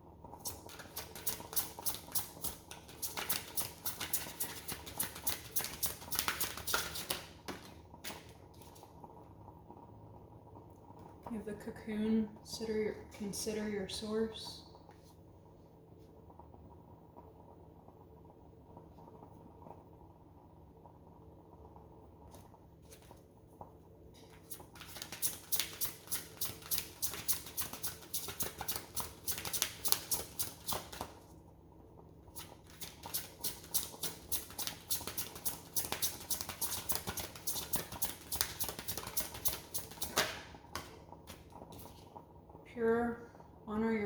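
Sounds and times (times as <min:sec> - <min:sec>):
cards being shuffled: 0:00.4 - 0:08.8, 0:24.3 - 0:31.1, 0:32.4 - 0:42.1.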